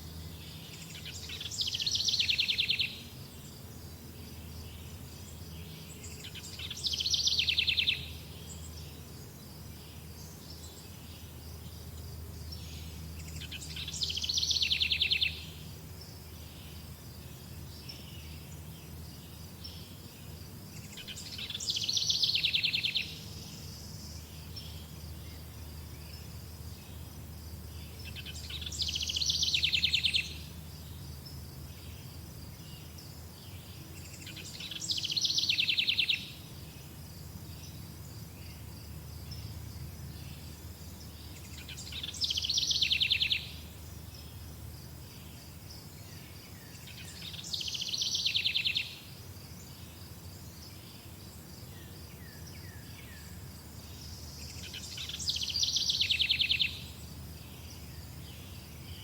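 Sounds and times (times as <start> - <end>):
songbird singing buzzy trill: 0.0 - 59.0.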